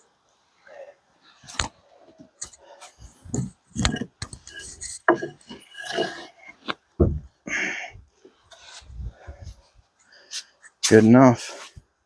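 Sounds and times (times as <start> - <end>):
knocks and clunks: 3.2 - 7.5.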